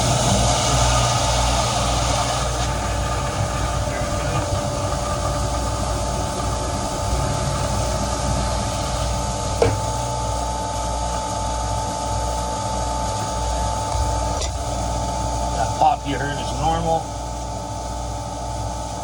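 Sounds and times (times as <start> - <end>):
water rushing through pipes: 0.0 - 9.6
well pump humming: 0.0 - 19.0
sharp pop: 9.6 - 9.9.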